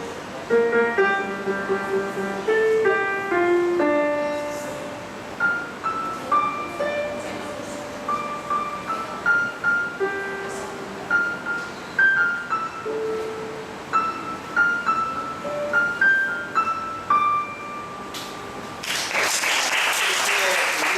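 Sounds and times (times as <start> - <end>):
solo piano melody: 0.0 - 18.8
audience applause: 18.8 - 20.9.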